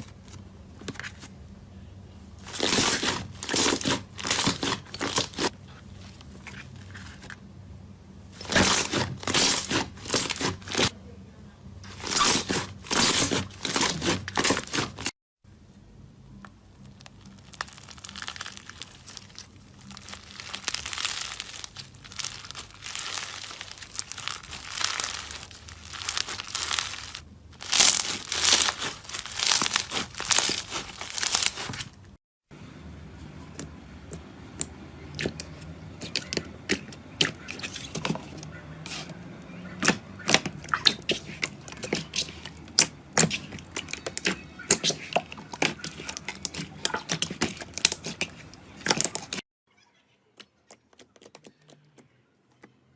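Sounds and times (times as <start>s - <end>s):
slime squeezed crackling: 2.4s - 7.3s, 8.4s - 10.9s, 11.9s - 15.1s, 16.8s - 32.0s, 33.6s - 49.4s.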